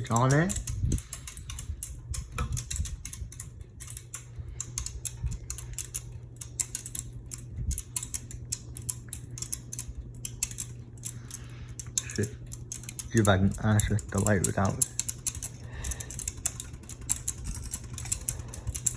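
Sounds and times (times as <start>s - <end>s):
ceiling fan motor hum: 0.0s - 18.9s
fan clicking: 0.0s - 18.9s.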